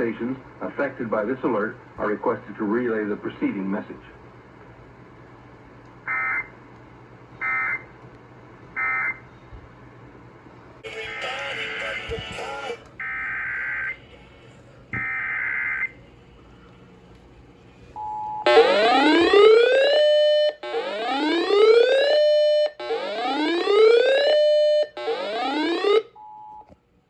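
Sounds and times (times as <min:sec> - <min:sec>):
rising whoop siren sweeps: 0:18.5 - 0:26.0.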